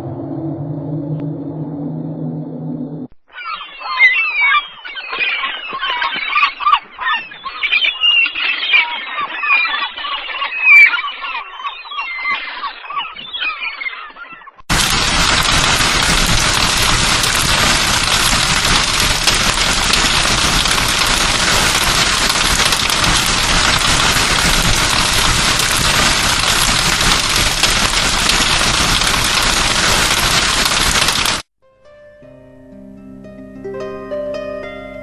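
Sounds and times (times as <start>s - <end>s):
bird-like calls: 3.3s - 14.6s
heavy rain downpour: 14.7s - 31.5s.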